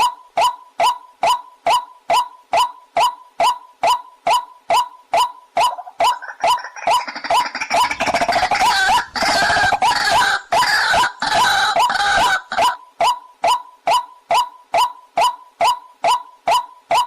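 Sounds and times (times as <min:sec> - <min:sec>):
waterhen calls: 0:03.9 - 0:12.8.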